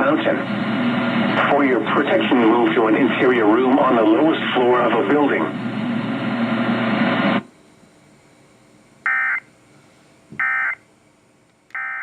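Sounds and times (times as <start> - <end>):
digital data tone bursts: 10.4 - 10.8.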